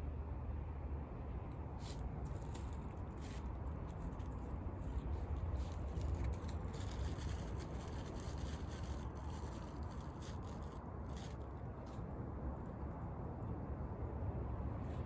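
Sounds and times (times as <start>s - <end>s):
fire low rumble: 1.6s - 13.0s.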